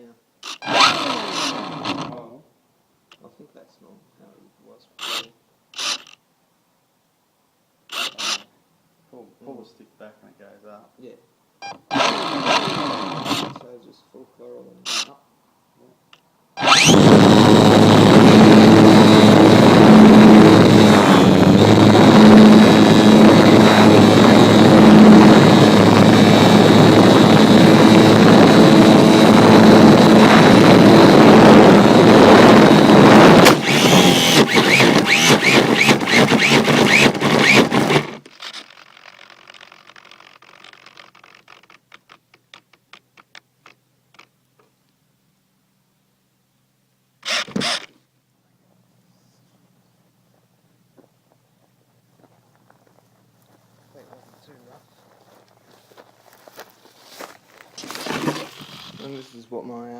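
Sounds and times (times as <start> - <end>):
model plane motor and propeller: 0.4 - 2.3, 5.0 - 6.2, 7.9 - 8.5, 11.6 - 13.7, 14.8 - 15.2, 16.6 - 44.3, 47.2 - 48.0, 57.8 - 59.4
wind rush: 16.7 - 37.9.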